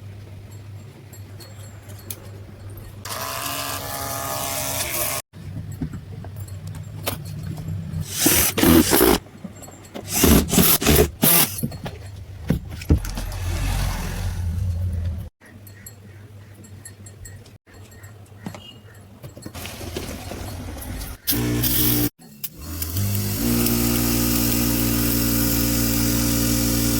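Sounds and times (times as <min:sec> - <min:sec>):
electric pump motor whining: 0:08.1 - 0:09.2, 0:10.1 - 0:11.6, 0:21.2 - 0:26.9.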